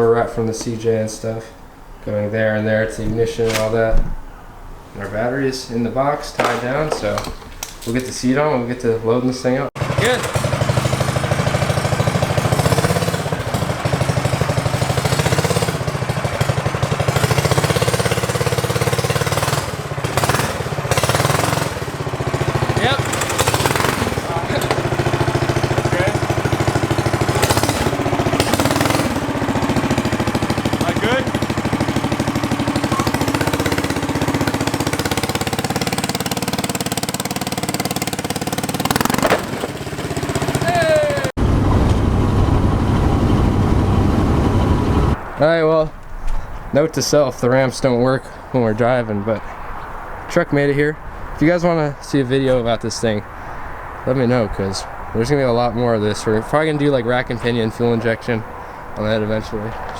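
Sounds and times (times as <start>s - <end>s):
engine chugging: 9.8s - 45.2s.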